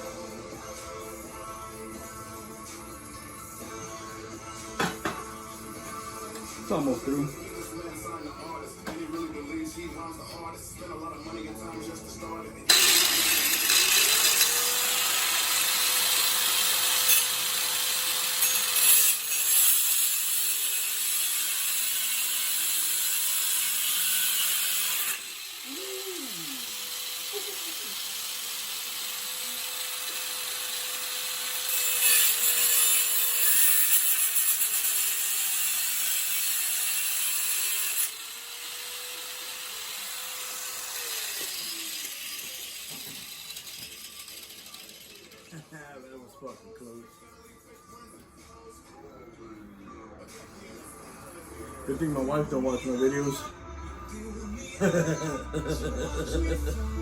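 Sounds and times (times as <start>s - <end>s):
angle grinder cutting steel: 12.7s - 45.6s.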